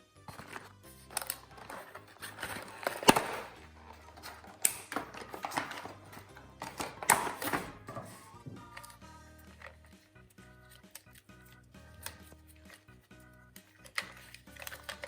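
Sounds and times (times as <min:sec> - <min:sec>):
toy packaging crinkling and rustling: 0:00.2 - 0:15.0
plastic packaging clicks and snaps: 0:00.3 - 0:07.6, 0:13.5 - 0:15.0.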